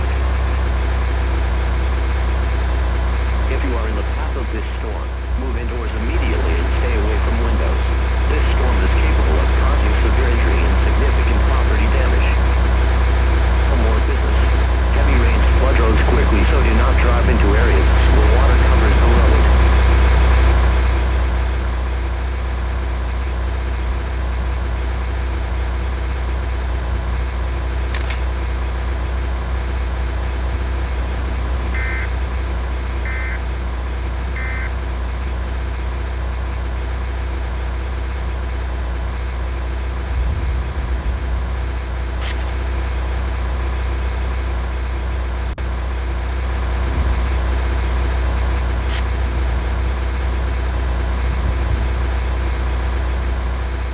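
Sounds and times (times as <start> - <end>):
car engine rumble and road noise: 0.0 - 53.9
faint clicks: 27.8 - 28.4
short beeps: 31.8 - 32.1, 34.4 - 34.7.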